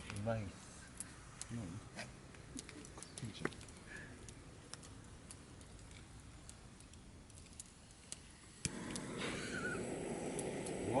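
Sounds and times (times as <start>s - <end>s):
steady noise: 8.4s - 11.0s.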